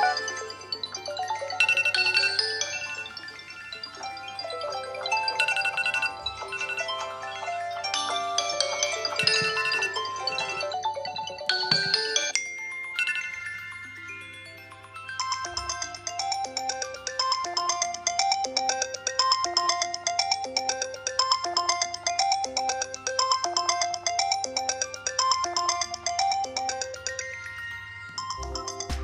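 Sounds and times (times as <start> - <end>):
phone ringtone melody: 0.0 - 29.0.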